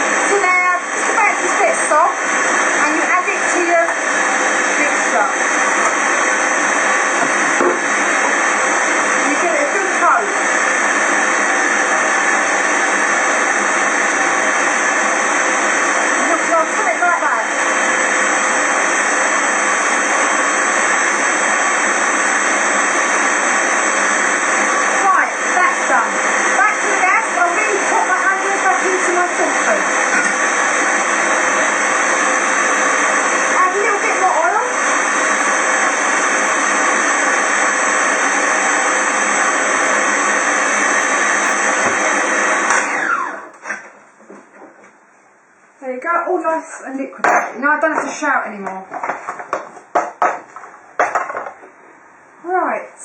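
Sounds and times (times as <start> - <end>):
electric blender running: 0.0 - 43.8
extractor fan rushing: 26.2 - 43.4.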